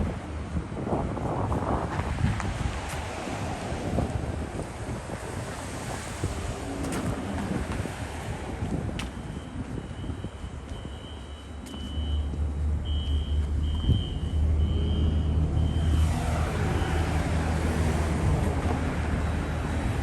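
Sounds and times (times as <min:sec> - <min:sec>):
distant fire alarm horn blasts: 0:09.2 - 0:16.0
passing road vehicle: 0:12.2 - 0:20.0.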